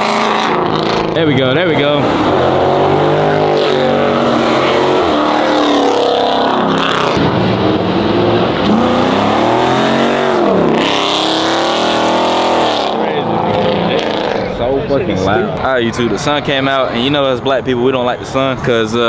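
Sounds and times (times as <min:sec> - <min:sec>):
car engine revving hard: 0:00.0 - 0:14.7.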